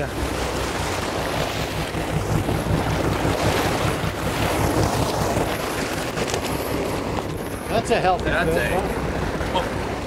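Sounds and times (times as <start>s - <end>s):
sea water rushing: 0.0s - 10.0s
wind buffeting microphone: 0.0s - 10.0s.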